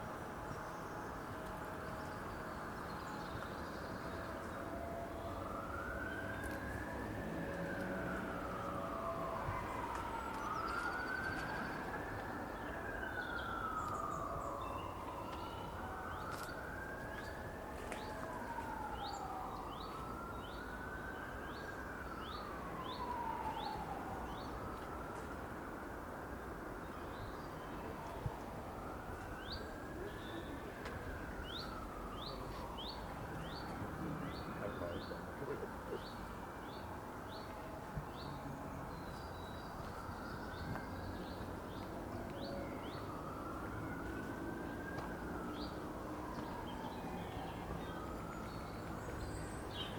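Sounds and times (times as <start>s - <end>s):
city traffic hum: 0.0s - 49.9s
distant siren wailing: 0.0s - 49.9s.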